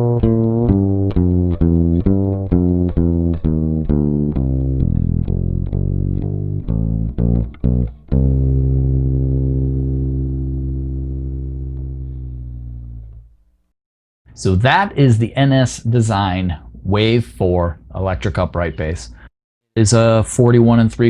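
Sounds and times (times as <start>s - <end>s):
electric upright bass walking line: 0.0s - 13.6s.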